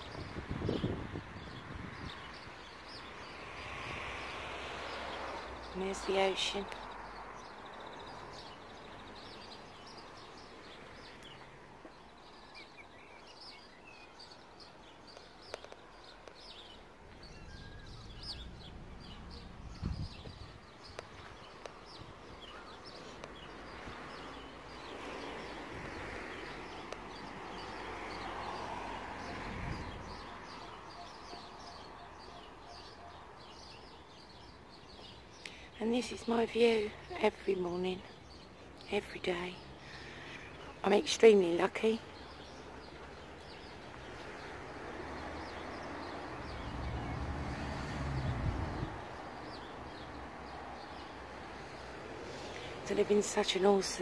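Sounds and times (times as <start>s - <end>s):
songbirds chirping and singing: 0.0s - 54.0s
low thumps: 17.6s - 20.5s.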